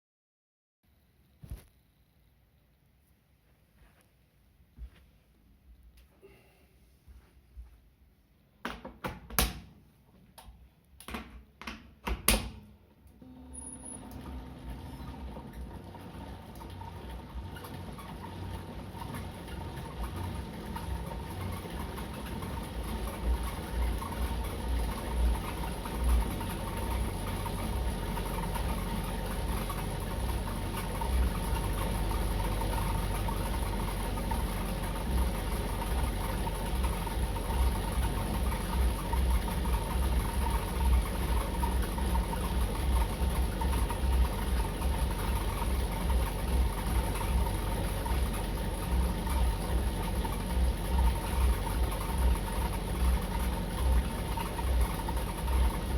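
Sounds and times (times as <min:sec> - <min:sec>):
bike trainer spinning: 0:13.5 - 0:55.9.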